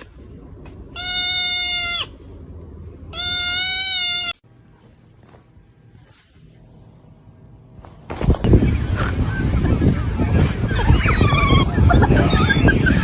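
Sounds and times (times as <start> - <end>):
animal bleat-like calls: 3.1 - 4.4.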